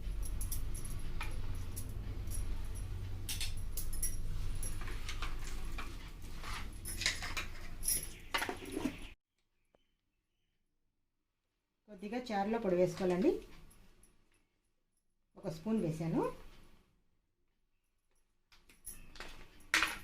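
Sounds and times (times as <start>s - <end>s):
steady low hum: 0.0s - 7.0s
metal utensils clinking: 0.0s - 9.1s.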